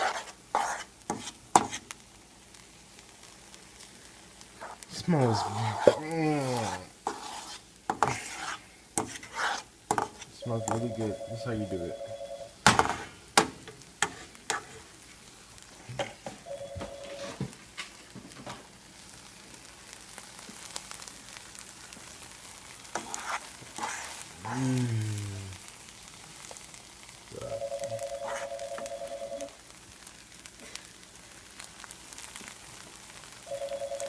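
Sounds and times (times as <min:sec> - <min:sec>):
utensil stirring and scraping: 0:00.0 - 0:01.9, 0:04.6 - 0:10.9, 0:14.0 - 0:15.0, 0:22.4 - 0:24.6, 0:28.0 - 0:28.8
filling sizzling in a pan: 0:00.0 - 0:34.0.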